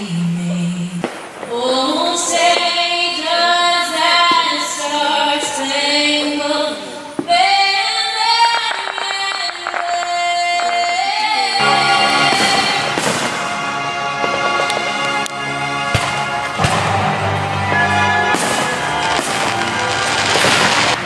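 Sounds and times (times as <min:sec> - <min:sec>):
woman singing song: 0:00.0 - 0:14.0.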